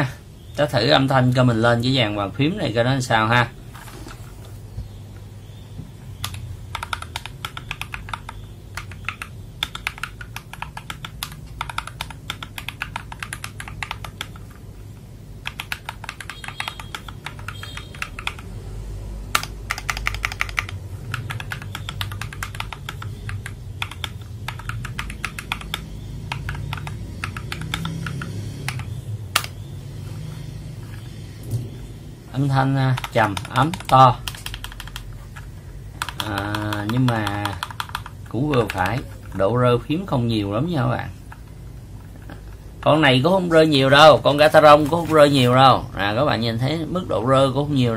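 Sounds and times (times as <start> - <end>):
mechanical keyboard typing: 6.2 - 14.6, 15.4 - 18.6, 19.3 - 29.6, 32.8 - 39.4.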